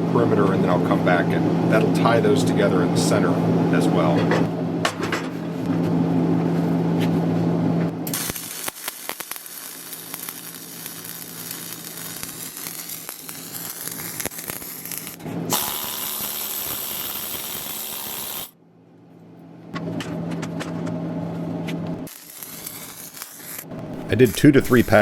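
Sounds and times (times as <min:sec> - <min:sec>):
steady low hum: 0:00.0 - 0:25.0
welding arc crackling: 0:08.0 - 0:18.6, 0:22.0 - 0:25.0.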